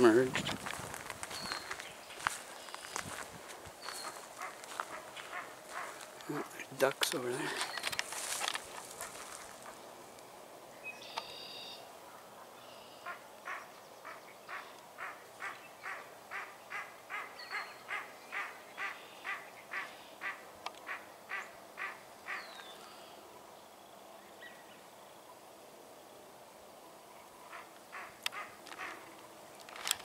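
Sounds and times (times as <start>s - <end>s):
duck quacking: 4.0s - 6.5s, 13.0s - 22.5s.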